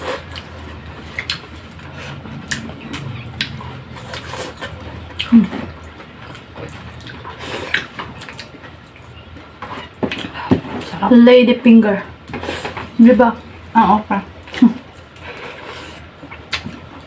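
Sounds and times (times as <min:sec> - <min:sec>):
chewing and slurping: 0:00.0 - 0:11.0, 0:14.4 - 0:17.0.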